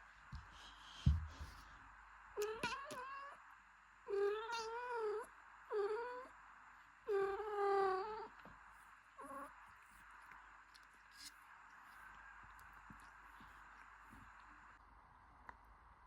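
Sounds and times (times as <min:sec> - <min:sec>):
cat meowing: 0:02.4 - 0:03.4, 0:04.1 - 0:06.3.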